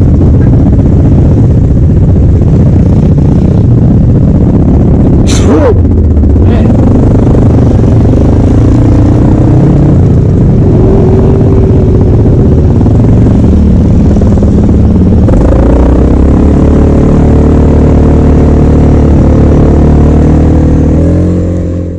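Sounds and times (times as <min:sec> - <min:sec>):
off-road vehicle engines revving: 0:00.0 - 0:21.9.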